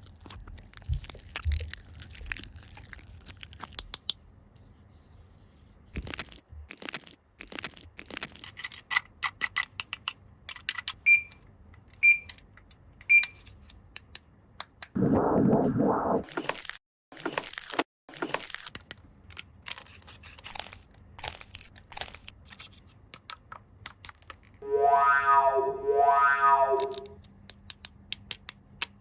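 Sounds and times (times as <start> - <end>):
plastic toy pieces clicking: 7.5 - 11.0
short high beeps: 24.6 - 27.2.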